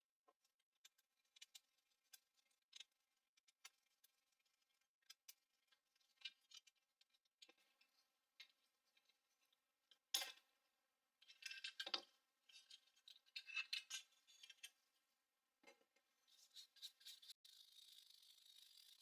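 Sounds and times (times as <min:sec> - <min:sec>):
brushing: 0:16.3 - 0:19.0.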